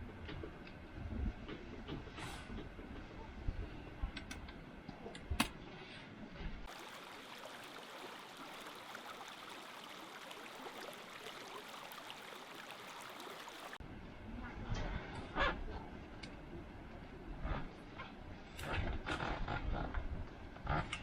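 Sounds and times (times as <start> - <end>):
stream water running: 6.6 - 13.8.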